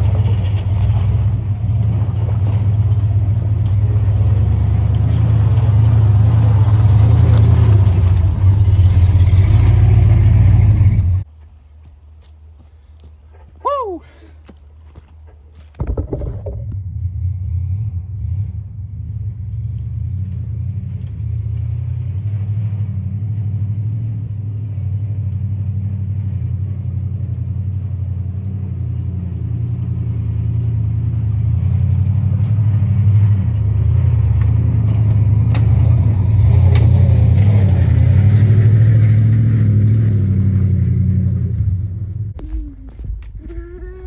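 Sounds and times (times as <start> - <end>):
car engine running: 0.0 - 11.3, 15.0 - 44.0.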